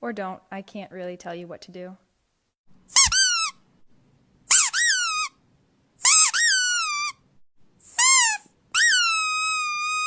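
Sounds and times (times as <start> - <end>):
squeaky toy squeaking: 2.9 - 3.6, 4.5 - 5.4, 6.0 - 7.2, 7.9 - 10.0.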